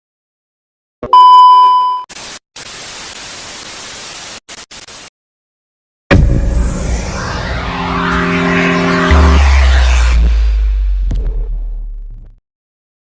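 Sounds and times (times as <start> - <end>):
loud steady beep: 1.2 - 2.1
hissing static: 2.1 - 5.1.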